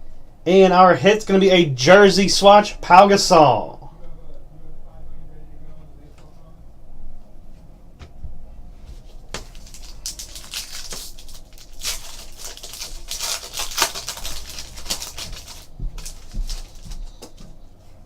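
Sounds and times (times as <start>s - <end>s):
wrapper crinkling and rustling: 9.3s - 17.4s.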